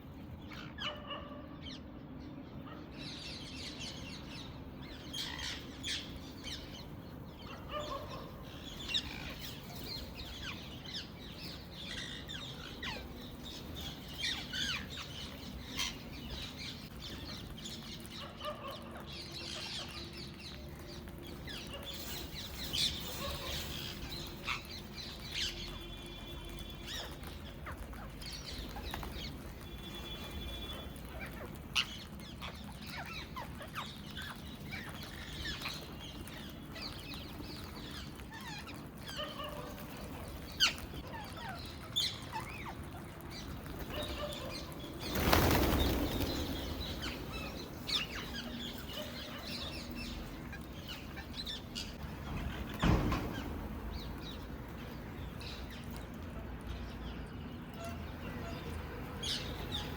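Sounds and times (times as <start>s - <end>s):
parrots chirping and squawking: 3.0s - 53.8s
wings flapping: 20.7s - 31.9s, 43.1s - 51.6s.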